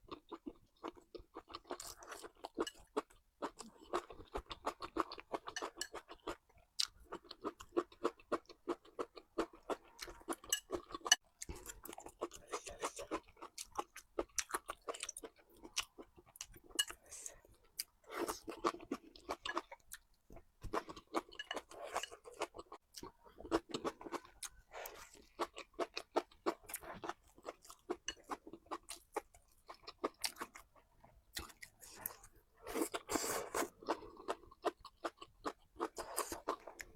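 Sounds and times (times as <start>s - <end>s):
person chewing and crunching food: 0.0s - 36.9s.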